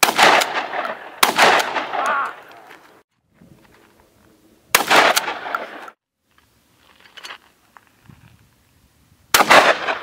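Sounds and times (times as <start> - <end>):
loud gunshot with echo: 0.0 - 2.0, 4.8 - 5.8, 9.3 - 10.0.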